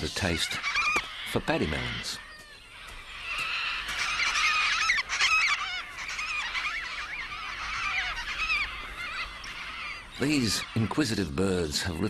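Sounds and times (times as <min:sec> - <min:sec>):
cockatoos screeching: 0:00.0 - 0:11.3.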